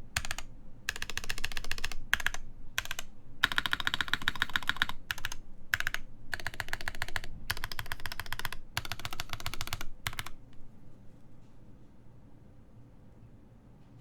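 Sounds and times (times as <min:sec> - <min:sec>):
fast typing on mechanical keyboard: 0:00.0 - 0:10.5.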